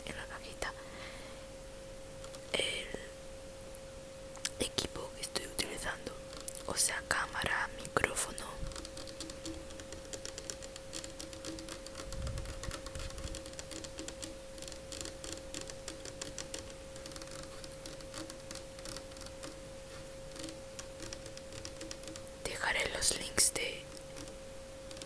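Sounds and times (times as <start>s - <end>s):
rapid light tapping: 2.2s - 2.6s, 5.5s - 25.0s.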